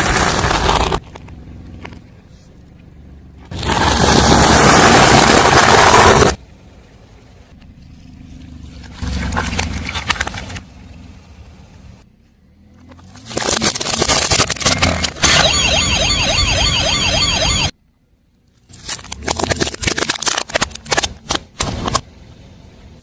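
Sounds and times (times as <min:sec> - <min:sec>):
tyre crushing objects crackling: 0:00.0 - 0:02.0.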